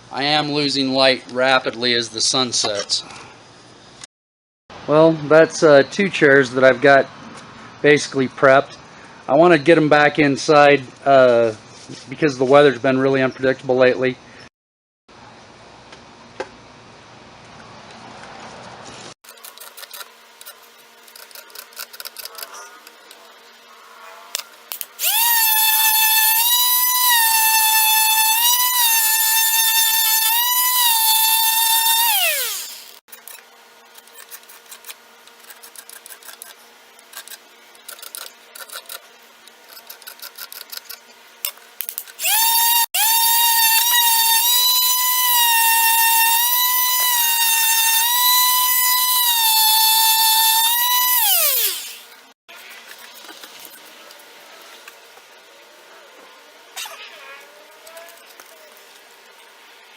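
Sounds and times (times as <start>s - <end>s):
electric sander whining: 25.0s - 33.0s, 42.2s - 52.0s.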